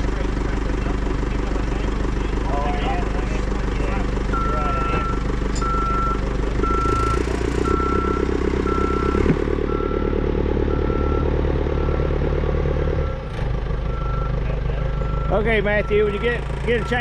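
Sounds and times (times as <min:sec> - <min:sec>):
diesel engine running: 0:00.0 - 0:17.0
reversing alarm beeping: 0:04.3 - 0:12.1, 0:15.1 - 0:17.0.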